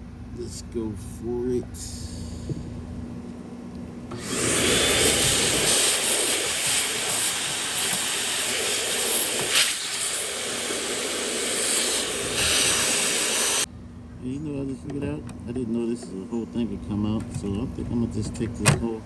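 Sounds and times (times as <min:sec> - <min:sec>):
vacuum cleaner rush of air: 0:04.1 - 0:13.7.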